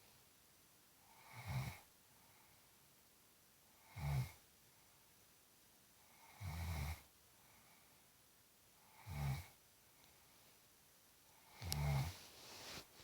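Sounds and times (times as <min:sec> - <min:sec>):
person snoring: 0:11.6 - 0:12.2.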